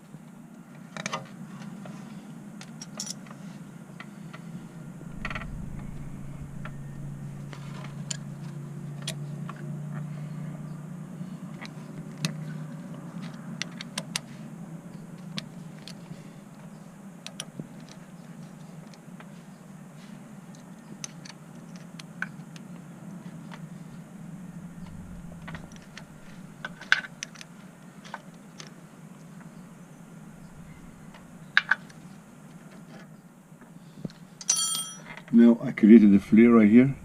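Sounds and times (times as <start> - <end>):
steady low hum: 3.3 - 13.2, 22.6 - 35.0, 35.6 - 37.0.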